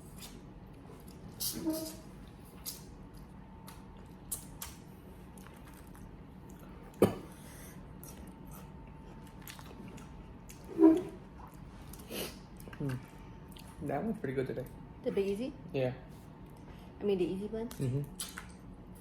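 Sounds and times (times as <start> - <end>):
chewing: 0.1 - 7.0, 7.9 - 13.8, 17.7 - 18.7.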